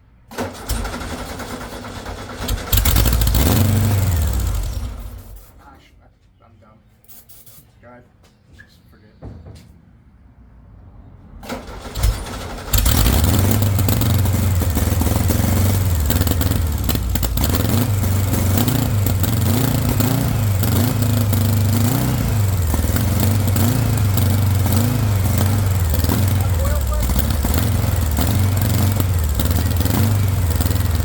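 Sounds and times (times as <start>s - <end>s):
engine cranking on starter: 0.2s - 5.6s, 11.4s - 31.0s
loud engine revving: 2.4s - 5.4s, 12.0s - 31.0s.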